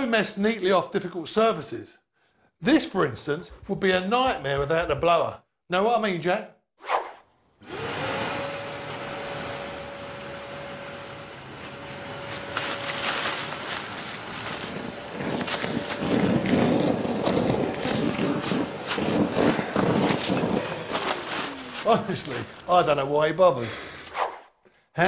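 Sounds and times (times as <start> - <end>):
vacuum blower whine with rushing air: 7.6 - 23.1.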